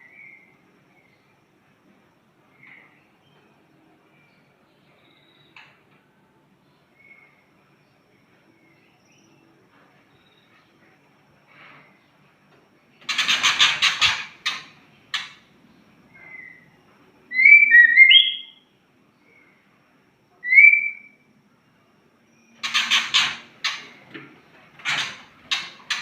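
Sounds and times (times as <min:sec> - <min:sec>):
bird raspy rattling calls: 0:13.0 - 0:15.4, 0:22.6 - 0:24.0, 0:24.8 - 0:26.0
bird whistled phrases: 0:17.3 - 0:18.6, 0:20.4 - 0:21.2.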